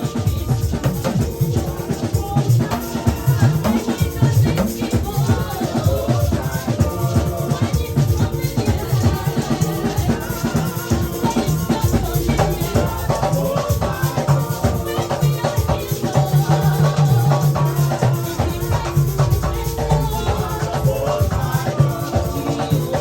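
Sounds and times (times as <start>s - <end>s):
drums: 0.0s - 23.0s
shakers: 0.0s - 23.0s
sustained bass line: 9.7s - 14.0s, 17.6s - 23.0s.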